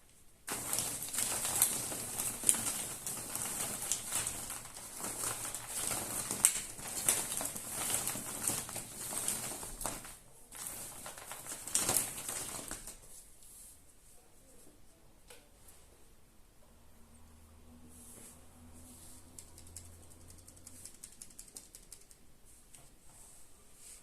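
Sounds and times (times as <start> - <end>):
foil wrapper crinkling: 0.5 - 13.1.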